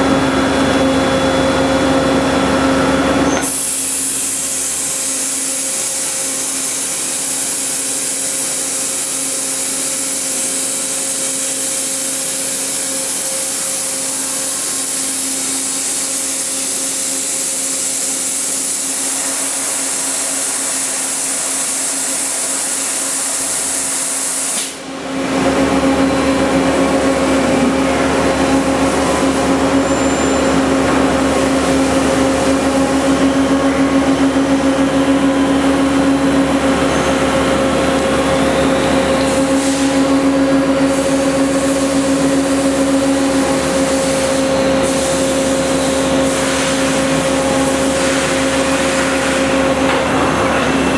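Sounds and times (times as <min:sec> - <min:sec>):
machine humming: 0:00.0 - 0:46.2
loud low machine noise: 0:00.0 - 0:50.9
loud hiss: 0:03.4 - 0:24.9.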